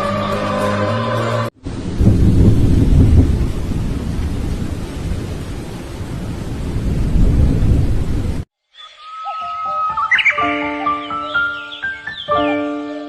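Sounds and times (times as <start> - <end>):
rain hissing: 1.3 - 8.5
thunder rumbling: 1.6 - 8.5.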